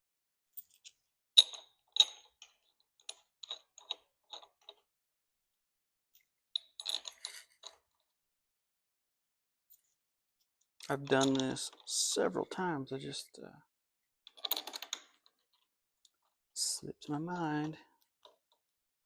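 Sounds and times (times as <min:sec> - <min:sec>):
small parts clicking and clinking: 0:00.6 - 0:04.9, 0:06.2 - 0:08.1, 0:10.8 - 0:12.2, 0:14.3 - 0:16.7, 0:17.6 - 0:18.6.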